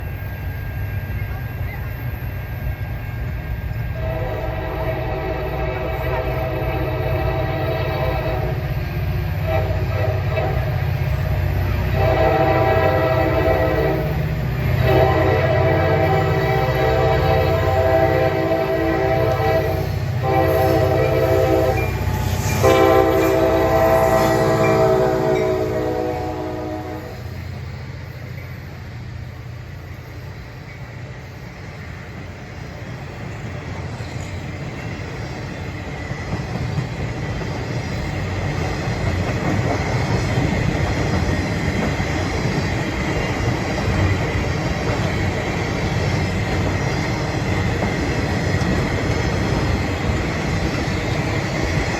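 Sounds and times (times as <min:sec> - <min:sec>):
diesel locomotive rumble: 0:00.0 - 0:51.9
train wheels on rails: 0:00.0 - 0:51.9
locomotive horn chord: 0:03.9 - 0:08.6, 0:09.4 - 0:10.9, 0:11.9 - 0:14.2, 0:14.8 - 0:27.3.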